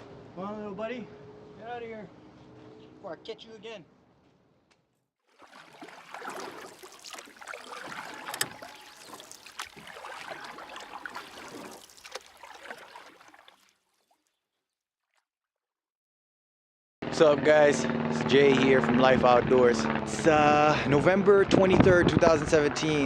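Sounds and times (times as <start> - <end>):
water splashing and sloshing: 5.2 - 15.2.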